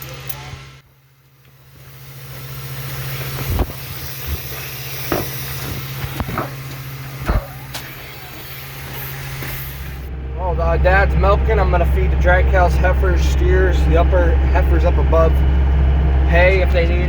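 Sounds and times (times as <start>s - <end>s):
vehicle engine running: 0.0s - 17.0s
sharp knocks: 5.0s - 7.9s.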